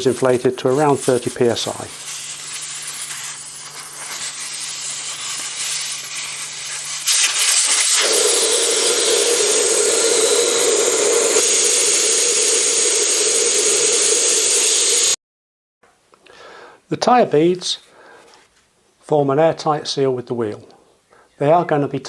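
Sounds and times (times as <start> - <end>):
air hissing from tyre valve: 0.0 - 15.2.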